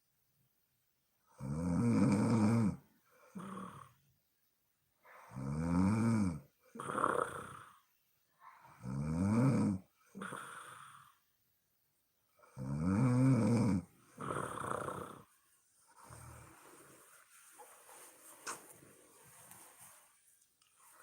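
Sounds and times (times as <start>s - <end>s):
woman snoring: 1.4s - 4.0s, 5.1s - 7.8s, 8.6s - 11.2s, 12.4s - 15.3s
soft breath out: 16.0s - 21.0s.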